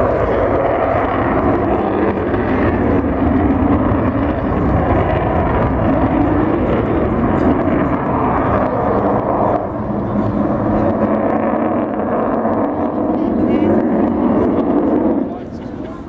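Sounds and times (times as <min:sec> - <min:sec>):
jet aircraft roar: 0:00.0 - 0:16.0.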